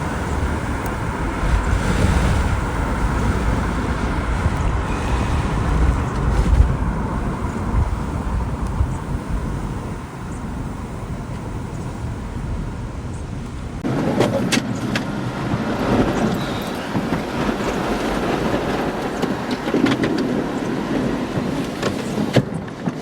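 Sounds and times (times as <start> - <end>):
car road and wind noise: 0.0 - 23.0.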